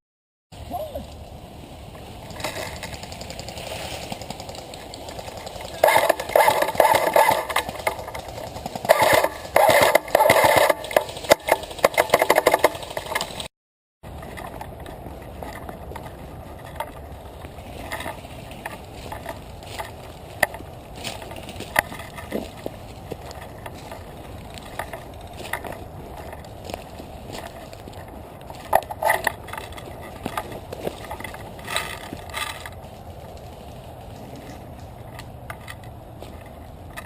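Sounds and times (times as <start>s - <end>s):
airsoft gun full-auto bursts: 5.8s - 12.8s.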